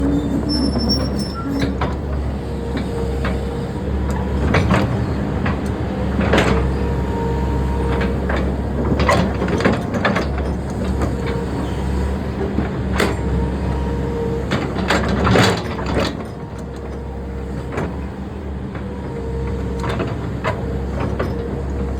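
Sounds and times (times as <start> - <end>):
construction machinery engine drone: 0.0 - 21.9.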